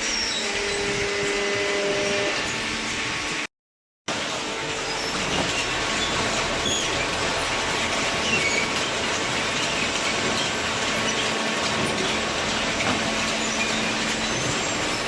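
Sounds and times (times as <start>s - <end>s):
baler machine running: 4.1s - 15.0s
short high squeaks: 4.8s - 7.2s, 8.2s - 9.0s.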